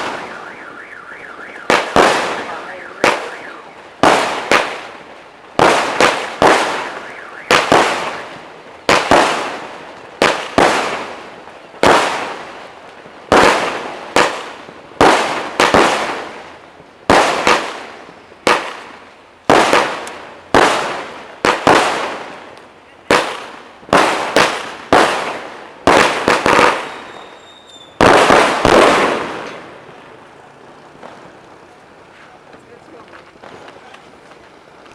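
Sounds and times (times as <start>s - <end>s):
fireworks bangs with hiss: 0.0s - 34.9s.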